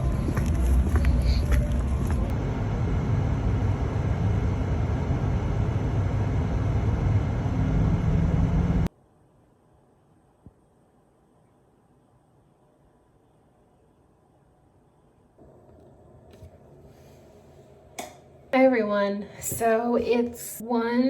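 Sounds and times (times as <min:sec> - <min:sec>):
car road and engine noise: 0:00.0 - 0:08.9.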